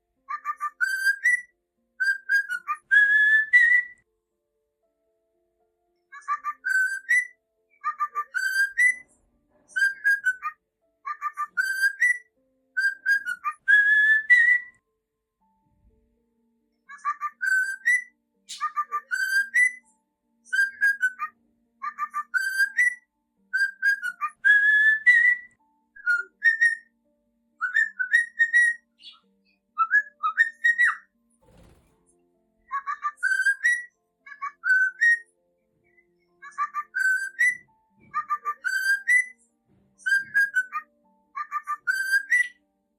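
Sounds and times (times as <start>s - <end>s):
cockatiel whistling: 0.3s - 1.4s, 2.0s - 4.0s, 6.2s - 9.0s, 9.7s - 10.5s, 11.1s - 12.2s, 12.8s - 14.7s, 16.9s - 19.8s, 20.5s - 23.0s, 23.6s - 26.9s, 27.6s - 29.2s, 29.8s - 31.8s, 32.7s - 35.2s, 36.4s - 39.4s, 40.0s - 42.6s.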